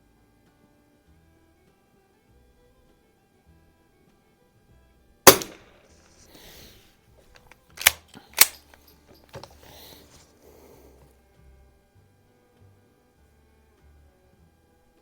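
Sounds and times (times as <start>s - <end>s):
rifle pump action clacks: 5.3s - 5.7s, 7.4s - 10.2s
rifle shot with echo: 5.3s - 5.8s, 7.8s - 8.6s.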